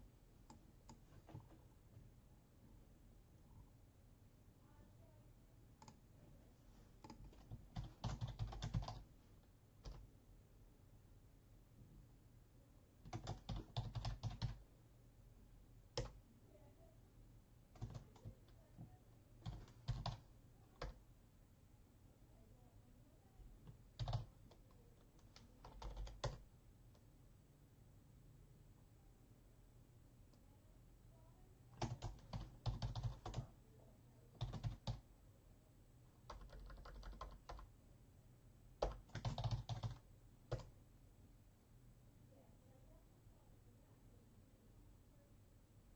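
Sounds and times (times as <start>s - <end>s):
computer keyboard typing: 7.0s - 9.1s, 9.8s - 10.0s, 13.0s - 14.6s, 16.0s - 16.2s, 17.8s - 18.6s, 19.4s - 21.0s, 23.7s - 26.4s, 31.7s - 33.5s, 34.3s - 35.0s, 36.2s - 37.7s, 38.8s - 40.7s.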